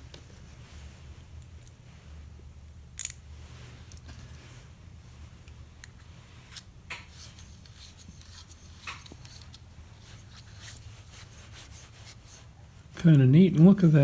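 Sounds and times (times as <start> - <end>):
steady low hum: 0.0 - 14.0
small metal parts clicking: 3.0 - 3.2.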